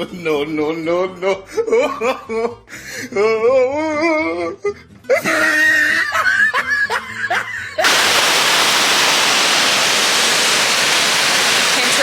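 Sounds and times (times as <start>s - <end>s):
person shrieking and laughing: 5.1s - 7.8s
waterfall rushing: 7.8s - 12.0s.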